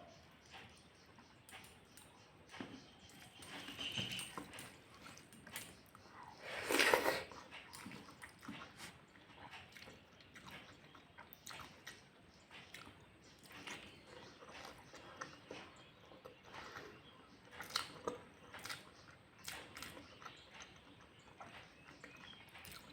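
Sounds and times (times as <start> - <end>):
person chewing and biting food: 6.4 - 9.0.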